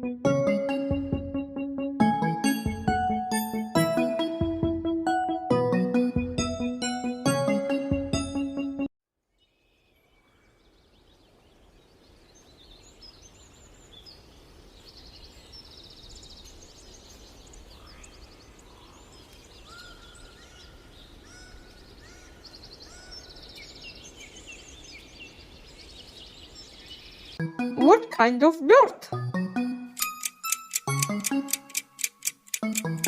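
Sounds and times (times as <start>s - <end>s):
songbirds chirping and trilling: 9.4s - 27.4s, 30.0s - 33.0s.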